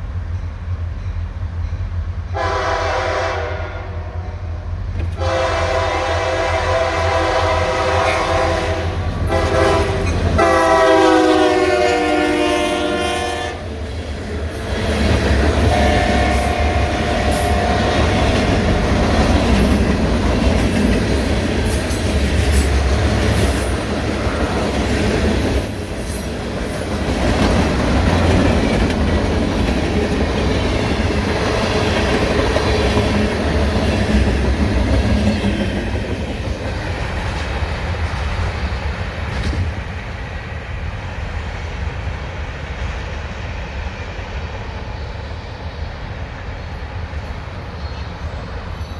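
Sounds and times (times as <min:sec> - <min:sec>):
train passing with low rumble: 0:00.0 - 0:48.9
train horn chord: 0:02.3 - 0:13.7, 0:15.6 - 0:18.2
wheels clacking on rails: 0:04.8 - 0:48.9.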